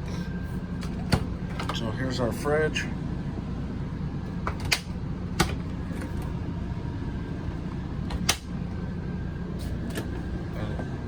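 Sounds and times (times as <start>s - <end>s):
low hum: 2.3s - 11.0s.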